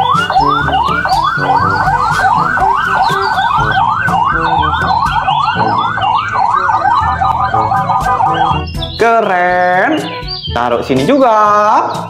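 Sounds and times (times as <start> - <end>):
toy siren yelping: 0.0 - 8.9.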